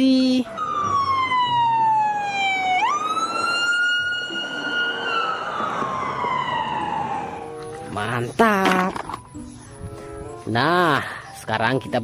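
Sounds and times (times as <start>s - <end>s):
police siren wailing: 0.2s - 7.9s.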